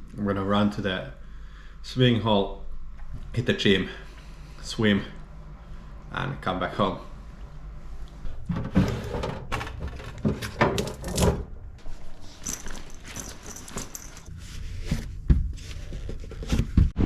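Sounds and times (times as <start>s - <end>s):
knocks and clattering handling: 8.4s - 14.3s
soft rustling: 11.8s - 16.9s.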